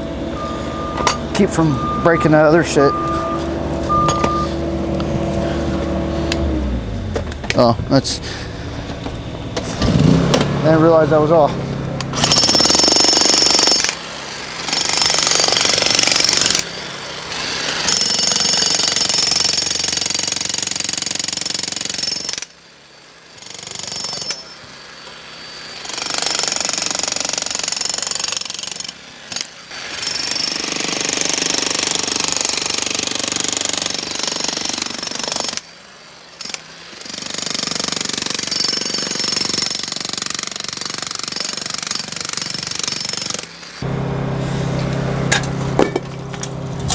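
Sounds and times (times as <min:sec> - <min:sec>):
jackhammer hammering concrete: 0:12.1 - 0:22.7, 0:23.4 - 0:35.8, 0:36.4 - 0:43.9.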